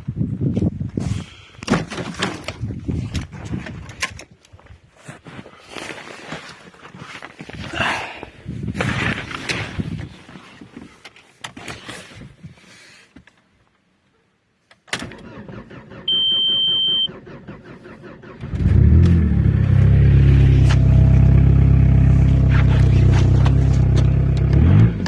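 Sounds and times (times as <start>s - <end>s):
handling noises: 8.6s - 13.9s, 22.0s - 24.6s
diesel engine cranking and idling: 15.0s - 25.0s
high beep: 16.1s - 17.1s.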